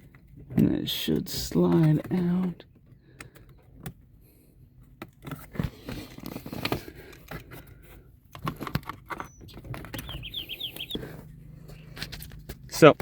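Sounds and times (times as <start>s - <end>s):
high chirps: 9.3s - 11.1s.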